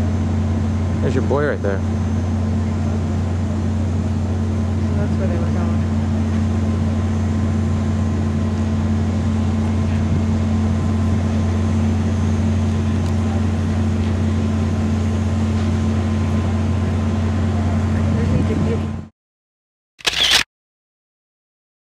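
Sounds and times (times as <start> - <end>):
low machine drone: 0.0 - 19.1.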